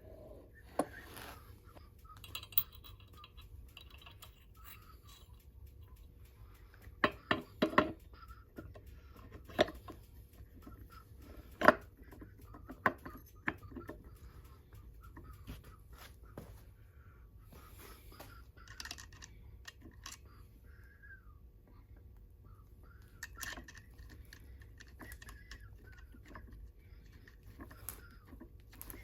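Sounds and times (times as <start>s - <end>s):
clinks and knocks of hand tools: 2.2s - 5.4s.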